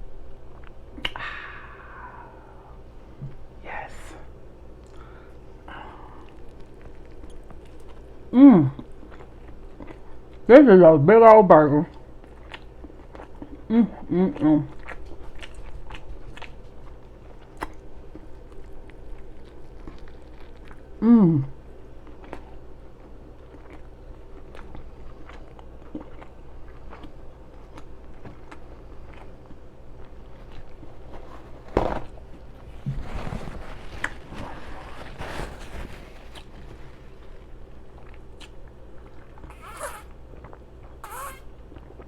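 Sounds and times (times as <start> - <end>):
wet chewing and lip smacking: 4.8 - 10.5, 11.9 - 13.7, 14.7 - 21.0, 22.0 - 31.0, 36.4 - 42.0.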